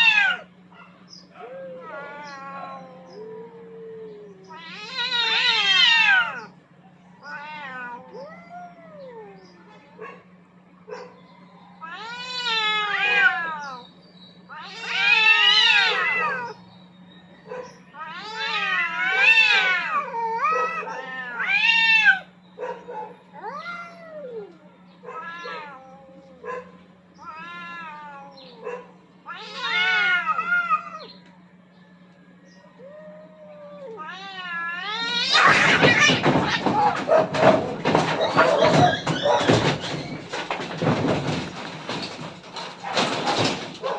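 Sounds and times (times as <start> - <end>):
cats yowling: 0.0 - 43.9
steady low hum: 0.0 - 43.9.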